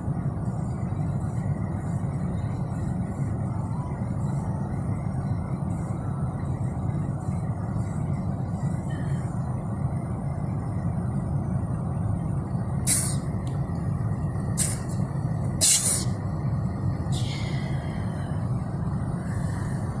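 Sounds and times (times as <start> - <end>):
car cabin rumble: 0.0 - 20.0
short hissing bursts: 12.8 - 13.2, 14.6 - 15.0, 15.6 - 16.1.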